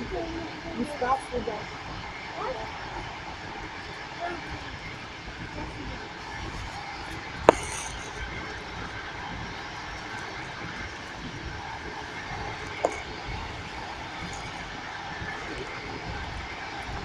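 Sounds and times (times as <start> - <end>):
train rumble from inside carriage: 0.0 - 7.5.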